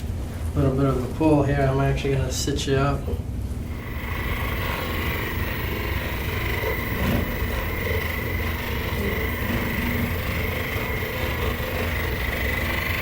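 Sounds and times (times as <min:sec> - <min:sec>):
electric motor humming and whining: 0:03.6 - 0:13.0.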